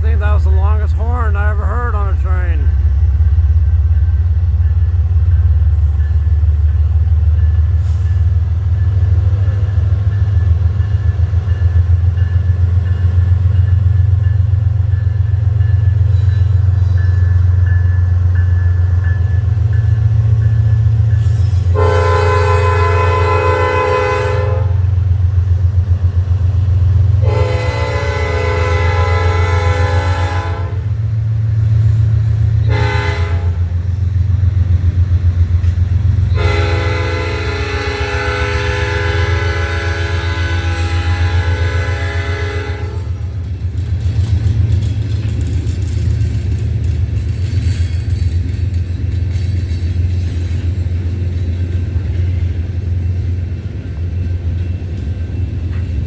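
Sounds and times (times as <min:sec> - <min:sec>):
diesel engine rumble: 0:00.0 - 0:15.6
locomotive air horn blasts: 0:21.7 - 0:24.9, 0:27.2 - 0:30.9, 0:32.6 - 0:33.7, 0:36.3 - 0:43.2.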